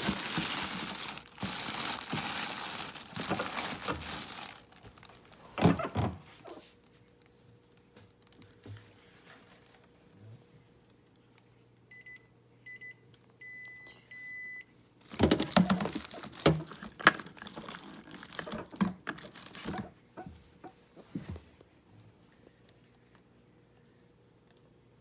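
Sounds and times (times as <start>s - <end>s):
refrigerator beeps: 11.9s - 15.7s.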